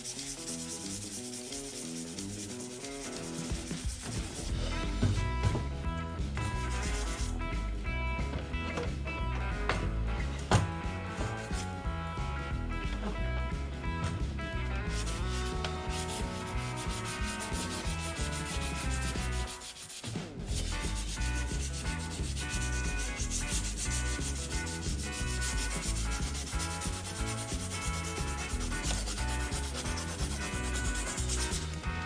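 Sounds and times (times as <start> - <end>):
sandpaper rubbing: 0.0 - 5.0, 6.4 - 7.3, 11.1 - 11.8, 14.8 - 32.0
background music: 0.0 - 32.0.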